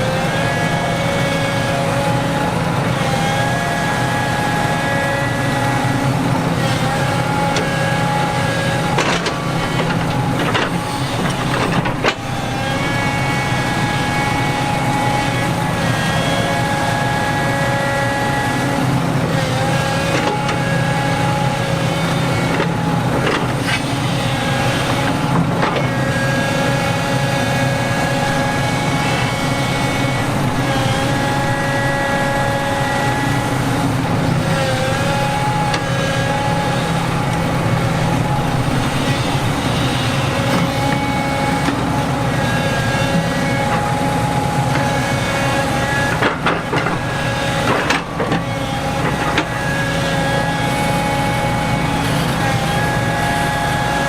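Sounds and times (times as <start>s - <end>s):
diesel construction machinery running: 0.0s - 54.0s.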